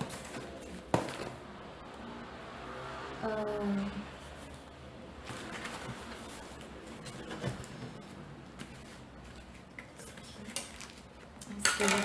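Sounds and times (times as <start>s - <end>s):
plastic-wrapped books rustling: 5.2s - 6.6s, 8.6s - 12.0s.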